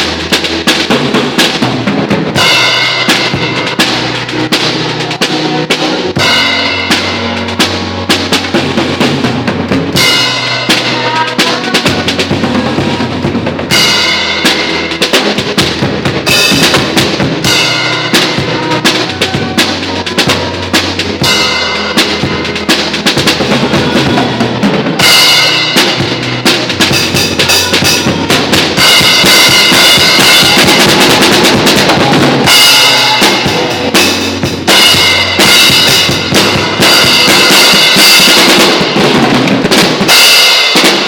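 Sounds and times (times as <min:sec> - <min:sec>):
low bass line: 0:00.0 - 0:40.1
drum kit playing: 0:00.0 - 0:41.0.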